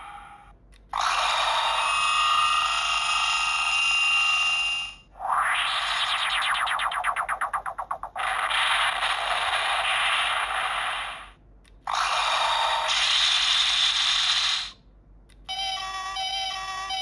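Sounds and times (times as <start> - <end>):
electronic hissing noise effects: 5.3 - 14.8
electronic toy clicks: 5.8 - 17.0.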